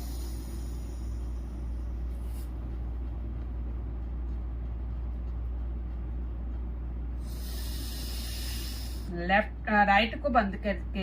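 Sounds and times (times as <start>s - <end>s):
breath inhaled through nostril: 0.0s - 1.4s, 7.2s - 9.1s
low background rumble: 0.0s - 11.0s.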